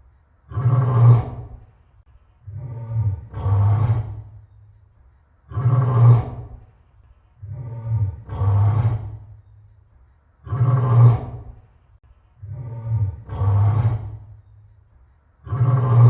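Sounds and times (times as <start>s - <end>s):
lion roaring: 0.5s - 1.6s, 2.4s - 4.3s, 5.5s - 6.6s, 7.4s - 9.3s, 10.4s - 11.6s, 12.4s - 14.3s, 15.4s - 16.0s.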